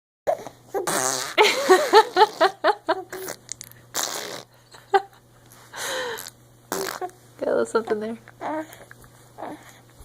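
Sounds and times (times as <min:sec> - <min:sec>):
child blowing raspberries: 0:00.8 - 0:01.4, 0:03.1 - 0:04.5, 0:06.0 - 0:07.1.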